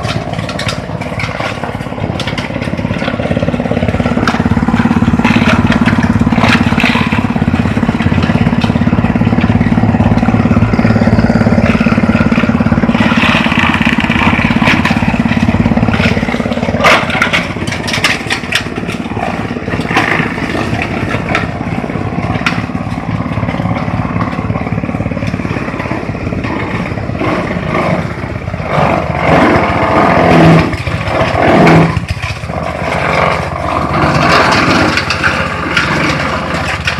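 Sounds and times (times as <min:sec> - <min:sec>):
chopping machine droning: 0:00.0 - 0:36.9
material cracking and crunching: 0:00.0 - 0:36.9.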